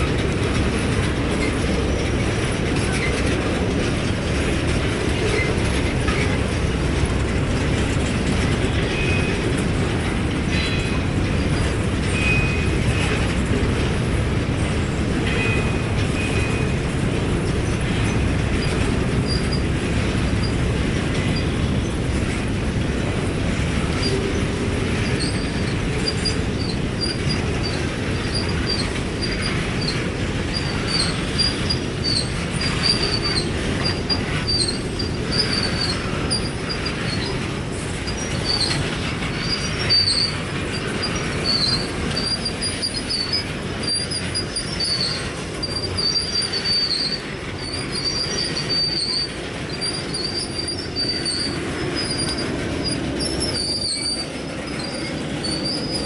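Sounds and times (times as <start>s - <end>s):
train wheels rumbling on rail: 0.0s - 56.0s
high-pitched wheel squeals: 10.5s - 13.3s, 25.0s - 56.0s.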